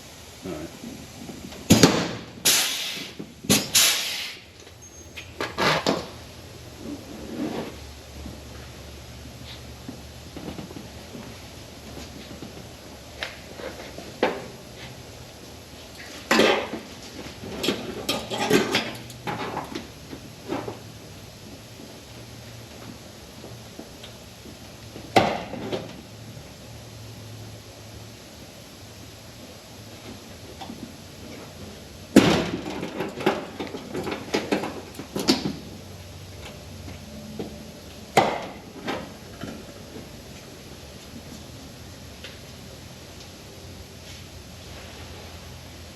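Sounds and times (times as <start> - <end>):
metal tools clinking: 4.8 - 5.4.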